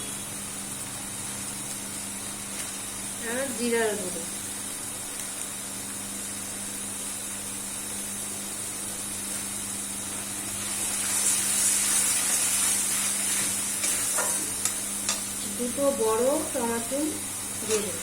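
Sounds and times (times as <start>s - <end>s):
paste sizzling in a pan: 9.3s - 18.0s.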